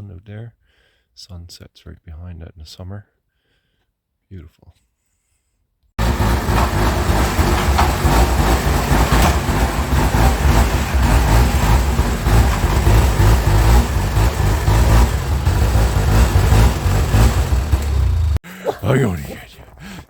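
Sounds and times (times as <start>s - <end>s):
snowmobile engine running: 6.0s - 18.4s.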